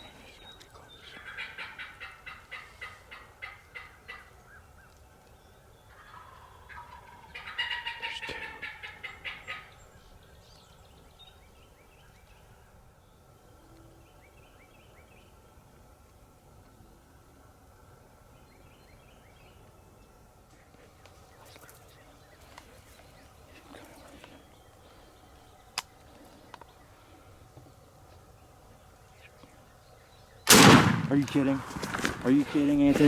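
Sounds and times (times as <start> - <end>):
turkey gobbling: 1.2 - 4.7, 5.9 - 9.8.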